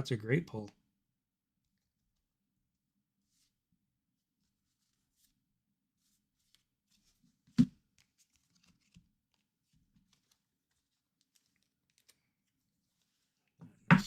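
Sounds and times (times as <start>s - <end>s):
cards and packaging rustling: 7.9s - 13.5s.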